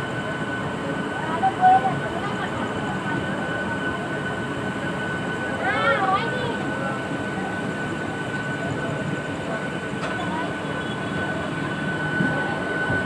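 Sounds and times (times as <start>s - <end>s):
constant high whine: 0.0s - 13.0s
train rumbling: 9.9s - 13.0s.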